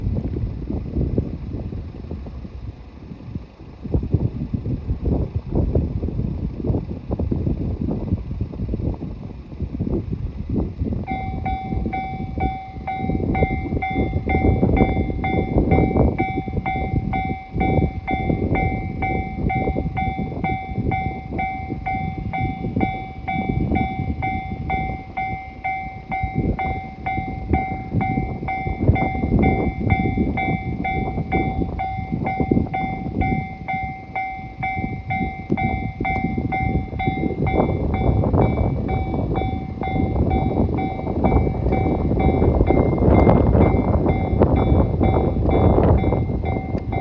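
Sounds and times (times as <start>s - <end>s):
train rumbling past: 0.0s - 47.0s
level-crossing warning bell: 11.0s - 47.0s.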